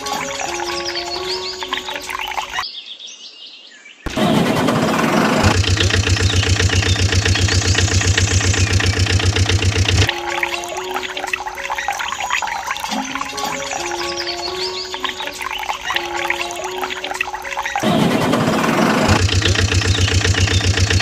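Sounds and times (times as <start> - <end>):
background music: 0.0 - 2.6, 10.0 - 19.8
engine starting and idling: 4.1 - 10.1, 17.7 - 21.0.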